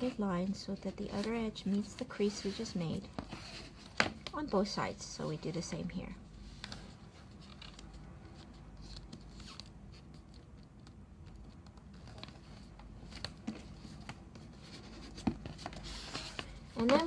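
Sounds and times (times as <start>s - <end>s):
paper rustling and crinkling: 6.4s - 17.0s.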